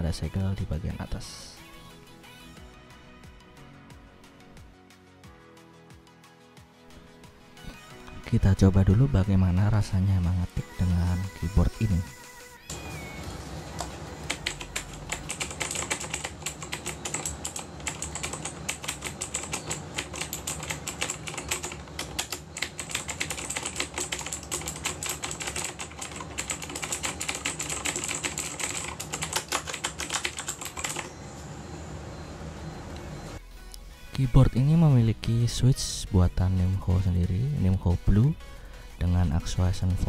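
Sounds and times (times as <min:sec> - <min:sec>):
mechanical keyboard typing: 0:13.8 - 0:31.1.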